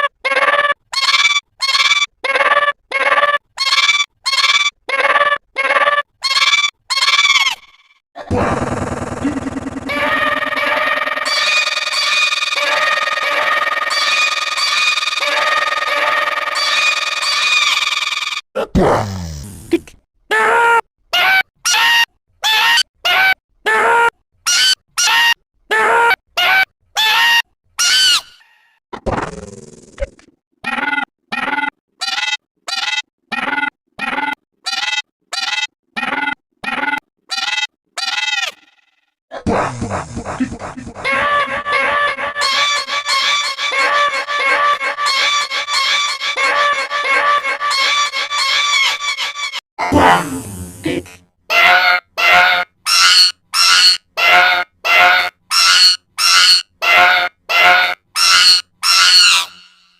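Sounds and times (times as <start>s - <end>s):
honk-like cartoon sound: 8.2s - 17.9s, 39.3s - 59.9s
cartoon character hiccuping: 49.8s - 51.2s.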